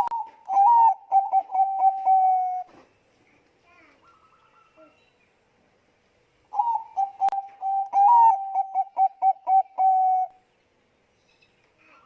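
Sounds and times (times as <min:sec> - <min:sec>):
dove cooing: 0:00.0 - 0:02.8, 0:06.5 - 0:10.4.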